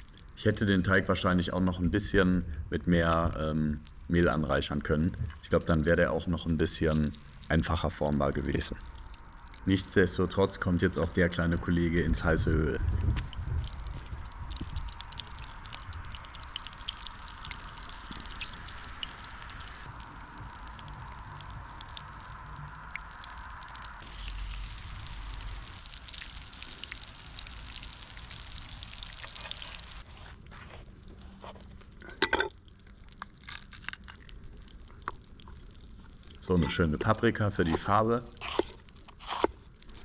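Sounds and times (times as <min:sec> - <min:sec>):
fritter sizzling in a frying pan: 0:13.8 - 0:30.0.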